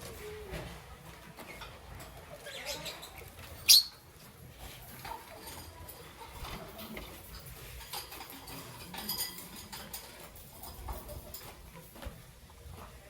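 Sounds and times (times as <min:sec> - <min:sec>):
bird clicking and tapping in cage: 0:05.0 - 0:12.2.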